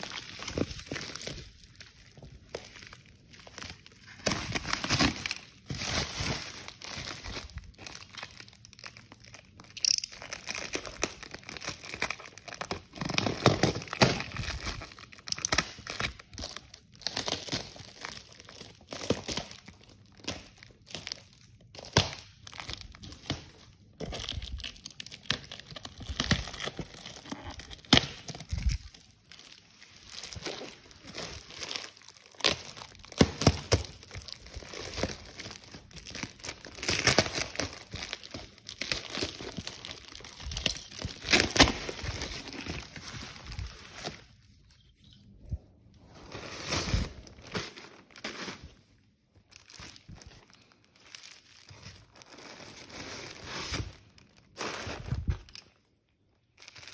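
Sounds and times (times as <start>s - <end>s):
packaging crinkling and rustling: 0.0s - 56.9s.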